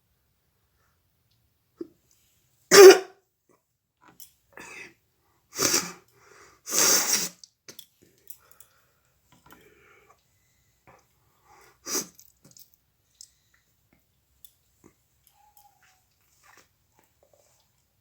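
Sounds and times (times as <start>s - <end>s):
woman sneezing: 2.7s - 3.1s, 5.6s - 6.0s
faint breathing: 6.1s - 6.7s, 8.3s - 11.9s.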